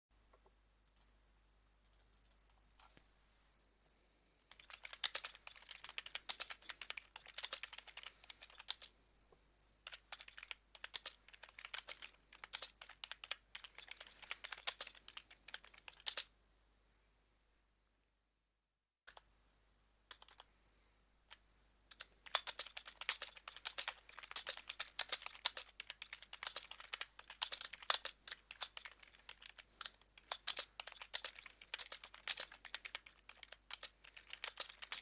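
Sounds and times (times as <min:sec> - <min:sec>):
computer keyboard typing: 0:00.3 - 0:01.2, 0:01.8 - 0:02.9, 0:04.5 - 0:08.9, 0:09.8 - 0:16.3, 0:19.1 - 0:19.3, 0:20.1 - 0:20.5, 0:21.3 - 0:35.0.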